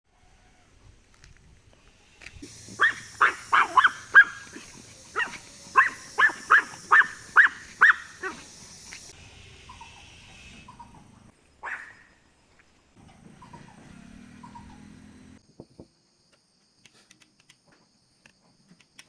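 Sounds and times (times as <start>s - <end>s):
puppy yapping: 2.7s - 8.5s, 11.6s - 12.1s.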